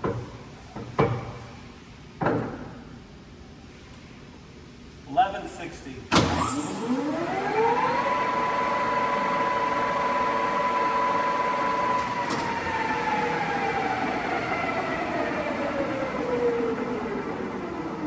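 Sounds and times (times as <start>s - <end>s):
lathe spindle whining: 9.1s - 18.0s.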